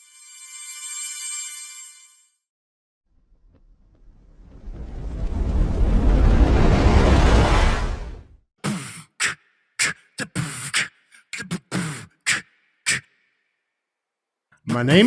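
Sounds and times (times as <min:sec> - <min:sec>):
loud rushing noise: 0:04.0 - 0:08.4
beatboxing: 0:08.6 - 0:13.1.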